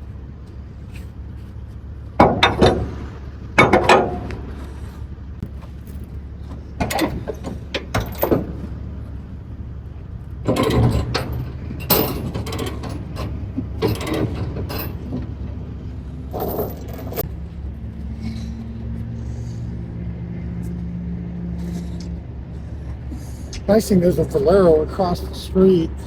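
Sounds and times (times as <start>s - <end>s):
steady low hum: 0.0s - 26.0s
metal chains clanking and ratcheting: 6.8s - 8.6s, 10.4s - 15.6s, 16.3s - 17.3s.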